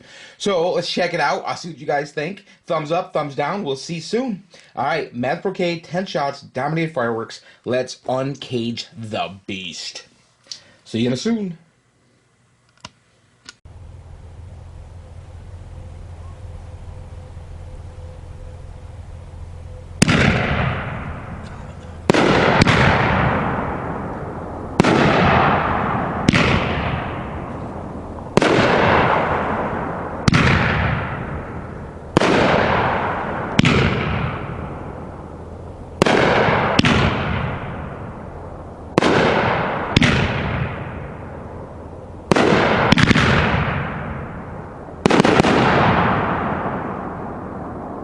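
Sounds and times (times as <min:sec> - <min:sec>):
firework bangs: 0:20.0 - 0:41.6, 0:42.2 - 0:48.0.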